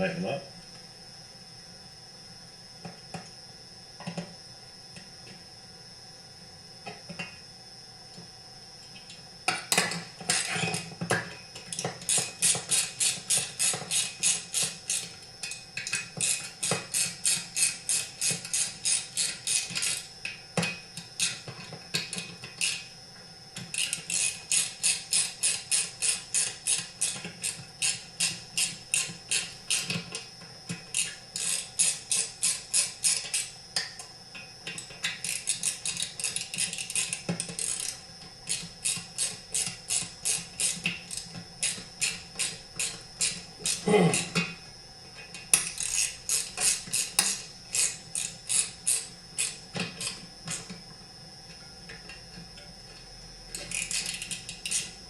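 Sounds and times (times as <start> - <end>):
ratchet clicking: 11.7 - 20.1, 23.7 - 30.0, 30.9 - 33.5, 34.7 - 43.8, 45.3 - 50.7, 53.5 - 54.9.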